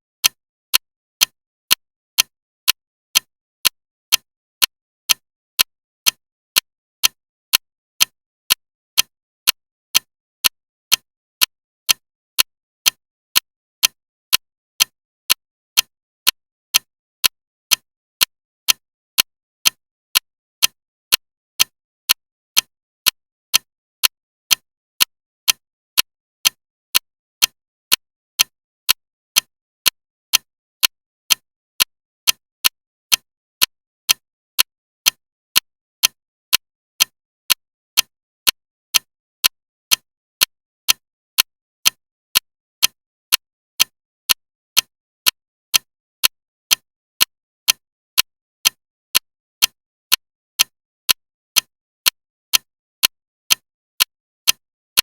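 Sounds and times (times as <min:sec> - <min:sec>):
loud clock ticking: 0:29.4 - 0:33.3.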